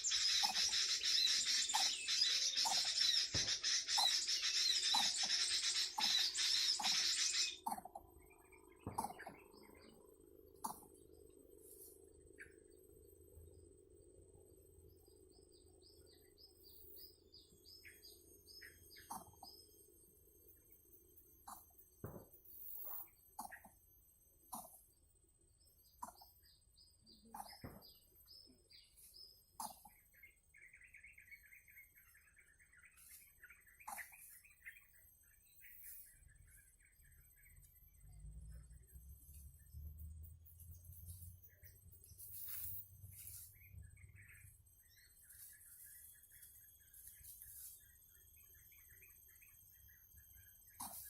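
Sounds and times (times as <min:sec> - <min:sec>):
bird chattering trill: 0:00.0 - 0:08.0
high down-slurred bird chirps: 0:00.0 - 0:11.3, 0:25.6 - 0:51.0.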